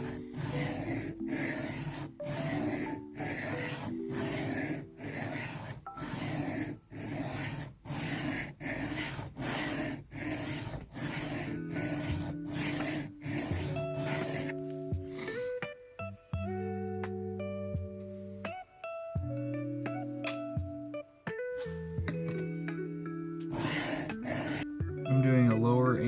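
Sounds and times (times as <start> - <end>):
knife rasping on sharpening plate: 0.0 - 14.6, 23.5 - 24.7.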